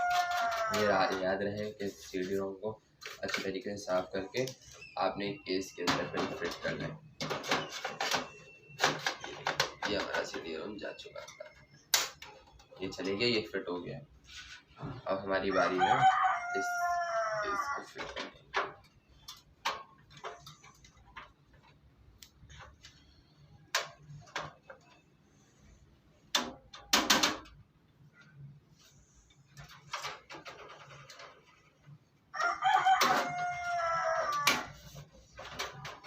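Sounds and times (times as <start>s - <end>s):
rooster crowing: 0.0s - 1.1s, 15.5s - 17.8s, 32.4s - 34.8s
computer case parts clicking: 17.8s - 25.2s, 26.2s - 27.7s, 29.4s - 32.0s.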